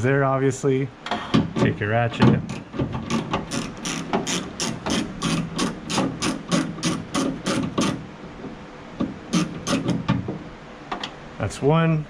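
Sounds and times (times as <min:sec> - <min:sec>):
socket ratchet clicking: 0:02.5 - 0:08.0, 0:09.3 - 0:10.1.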